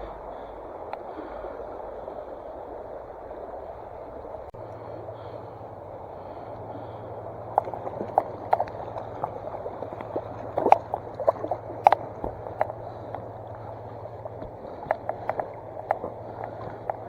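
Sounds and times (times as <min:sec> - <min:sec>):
stream water running: 0:00.0 - 0:17.0.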